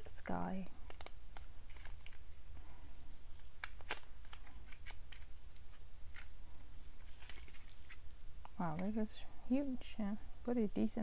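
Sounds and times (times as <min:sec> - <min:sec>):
packaging clicks taps and rustles: 0:00.8 - 0:02.3, 0:03.3 - 0:06.3, 0:07.0 - 0:08.9.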